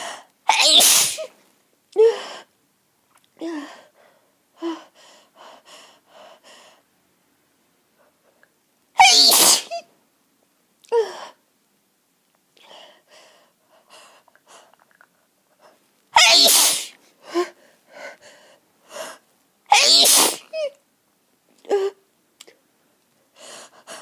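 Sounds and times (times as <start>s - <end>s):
person sneezing: 0.0s - 1.3s, 9.0s - 9.8s, 16.2s - 17.0s, 19.7s - 20.8s.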